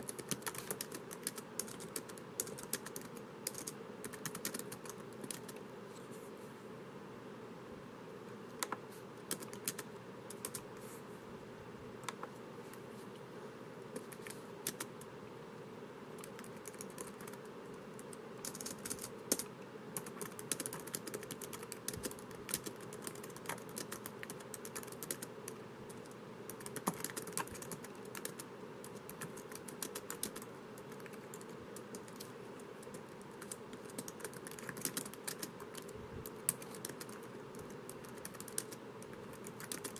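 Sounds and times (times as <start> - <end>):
laptop keyboard typing: 0.0 - 5.6, 8.5 - 10.7, 14.0 - 15.0, 16.2 - 39.9
faint steady hiss: 0.0 - 39.9.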